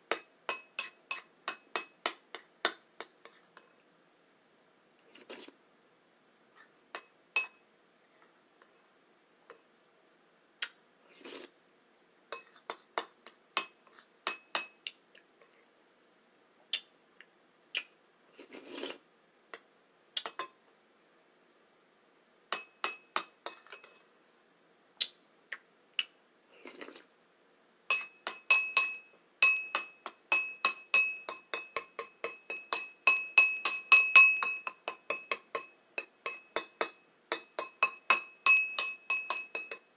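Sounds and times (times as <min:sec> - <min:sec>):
spoon tapping against a bowl: 0:00.1 - 0:03.7, 0:07.0 - 0:07.6, 0:09.5 - 0:09.7, 0:12.3 - 0:14.9, 0:20.2 - 0:20.6, 0:22.5 - 0:24.0, 0:27.9 - 0:39.9
slurps: 0:05.0 - 0:05.6, 0:11.1 - 0:11.6, 0:17.8 - 0:19.0, 0:26.6 - 0:27.1.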